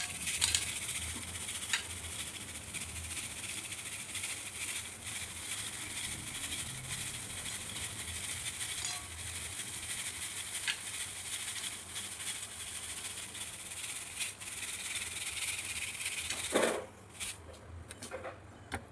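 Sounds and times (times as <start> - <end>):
grains rattling and rustling: 0.0 - 17.4.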